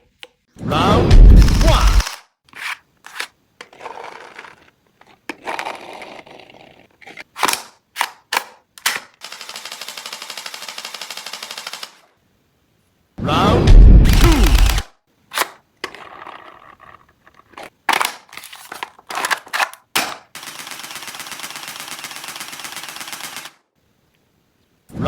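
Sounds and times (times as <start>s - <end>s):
toy blaster booming blast: 1.1s - 2.1s, 13.7s - 14.8s
toy blaster full-auto burst: 1.4s - 2.2s, 9.0s - 12.0s, 14.0s - 14.9s, 20.3s - 23.6s
sharp clicks: 1.4s - 2.3s, 14.0s - 14.9s.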